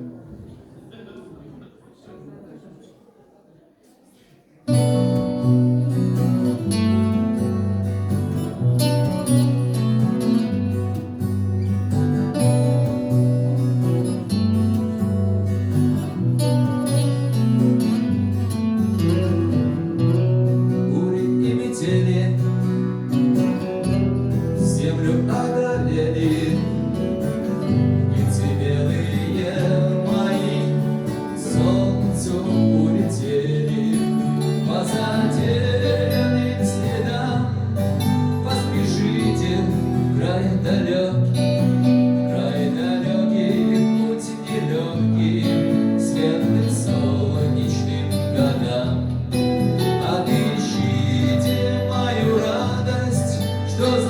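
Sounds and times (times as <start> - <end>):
guitar-led song: 4.7 - 54.0.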